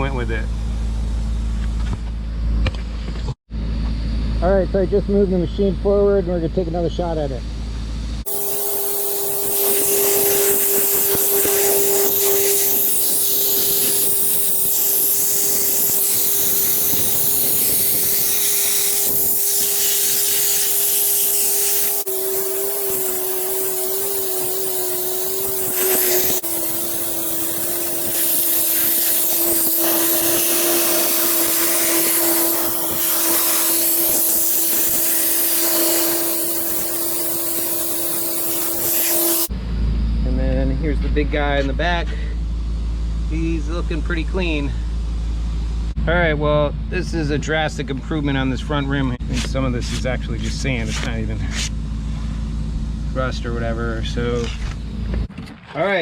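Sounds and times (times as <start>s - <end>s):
steady hum: 0.0s - 55.3s
sandblaster hissing: 8.2s - 39.5s.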